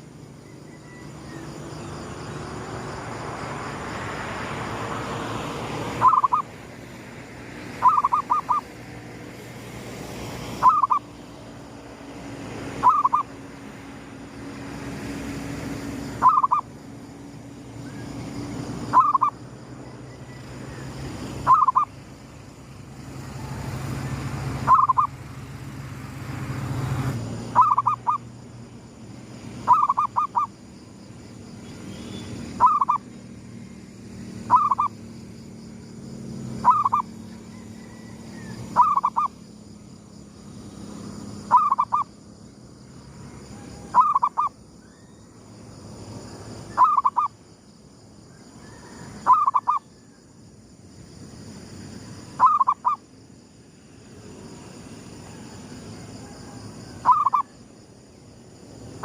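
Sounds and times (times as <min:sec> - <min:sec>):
dove cooing: 0:06.0 - 0:06.4, 0:07.8 - 0:08.7, 0:10.6 - 0:11.0, 0:12.8 - 0:13.3, 0:16.2 - 0:16.7, 0:21.5 - 0:21.9, 0:27.6 - 0:28.2, 0:29.7 - 0:30.5, 0:32.6 - 0:33.0, 0:34.5 - 0:34.9, 0:36.6 - 0:39.3, 0:52.4 - 0:53.0, 0:56.2 - 0:57.5.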